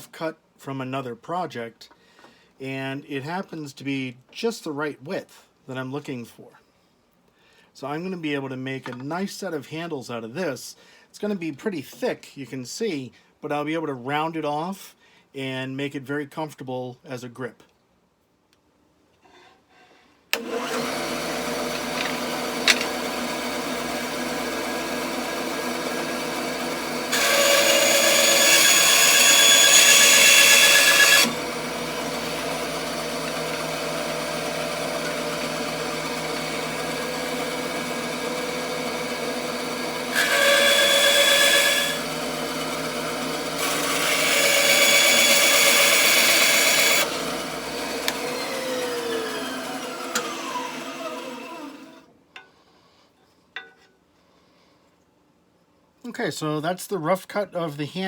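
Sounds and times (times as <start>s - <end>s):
power saw cutting wood: 20.4s - 52.0s.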